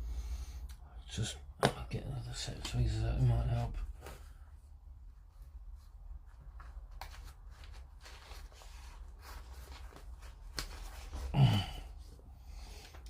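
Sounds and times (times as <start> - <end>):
breath or murmur: 11.2 - 12.8.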